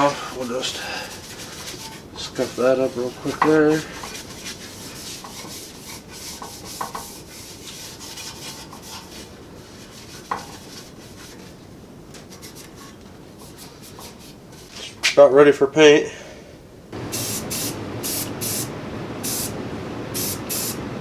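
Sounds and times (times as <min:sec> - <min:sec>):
abrasive rubbing on metal frame: 0:00.0 - 0:11.6.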